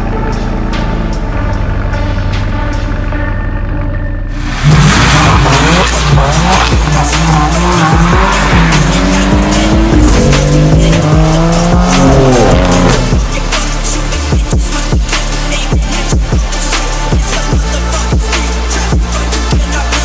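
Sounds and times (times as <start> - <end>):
music track: 0.0 - 20.0
car engine revving hard: 4.4 - 15.6.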